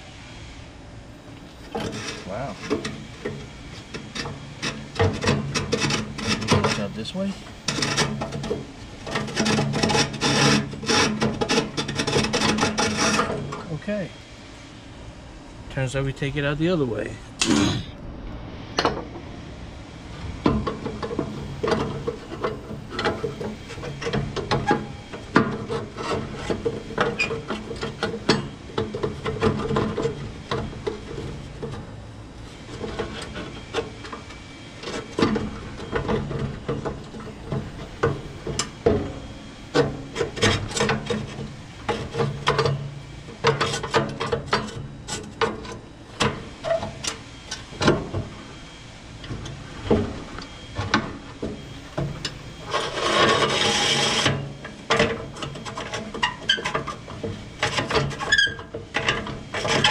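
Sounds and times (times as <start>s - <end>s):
metal parts scraping and knocking: 1.7s - 13.6s, 52.0s - 59.9s.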